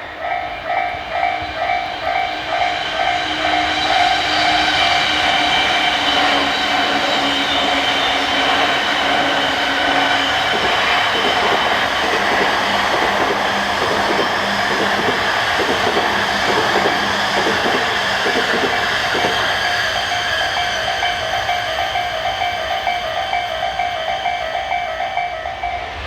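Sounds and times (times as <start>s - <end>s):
train wheels clattering: 0.7s - 23.5s.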